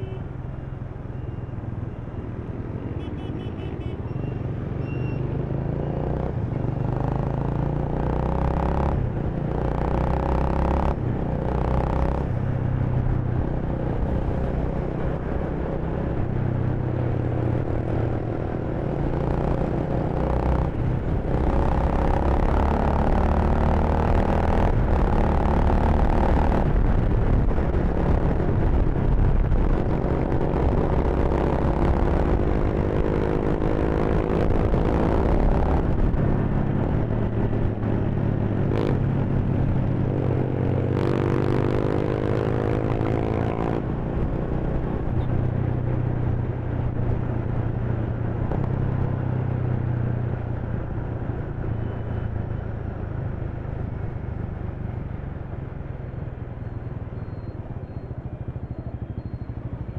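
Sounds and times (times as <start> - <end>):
motorcycle engine accelerating: 5.3 - 52.0.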